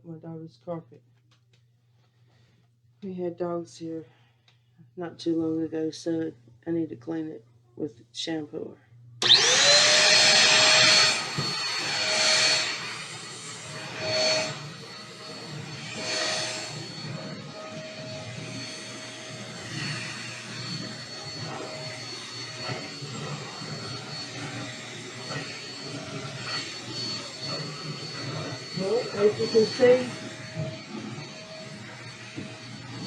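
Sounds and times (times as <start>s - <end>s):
vacuum cleaner motor whine: 9.2s - 33.0s.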